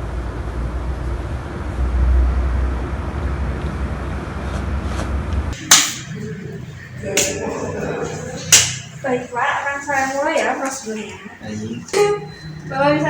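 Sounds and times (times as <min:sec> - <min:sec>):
sharp clacks: 0:05.6 - 0:06.2, 0:08.4 - 0:09.0.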